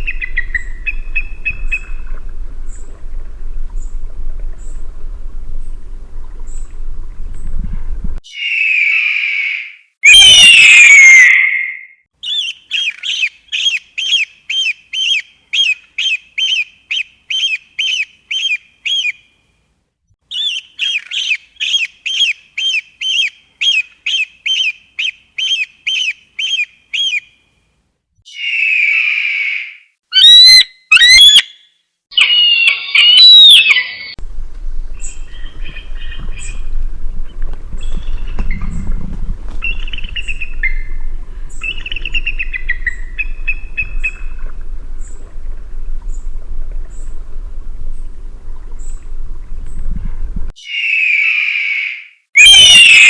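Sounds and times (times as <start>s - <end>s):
low rumble: 1.3s - 8.2s
rapid high piping calls: 8.2s - 19.2s, 20.3s - 27.4s, 28.3s - 34.0s, 50.6s - 53.0s
eagle screaming: 8.3s - 11.9s, 28.3s - 34.2s, 50.6s - 53.0s
short sharp bird cries: 50.6s - 53.0s.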